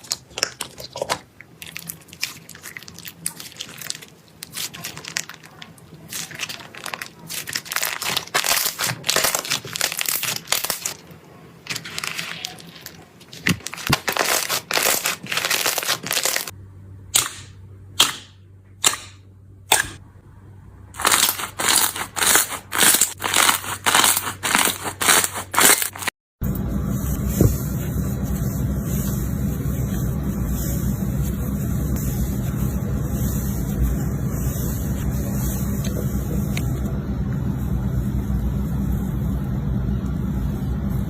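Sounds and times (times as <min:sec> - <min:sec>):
slime crackling and popping: 0:00.0 - 0:11.0
low hum: 0:16.6 - 0:21.0, 0:26.4 - 0:41.0.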